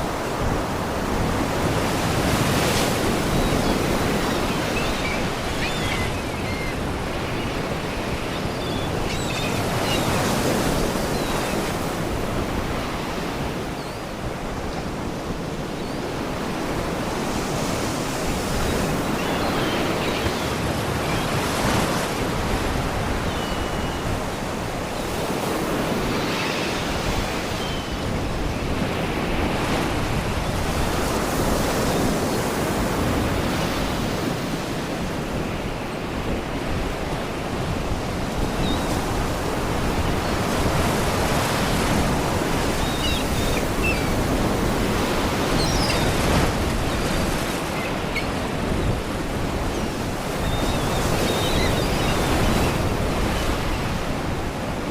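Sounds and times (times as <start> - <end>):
seagull cries: 3.2 - 7.4, 8.1 - 11.6, 42.6 - 52.5
sea waves washing against rocks: 36.7 - 54.9.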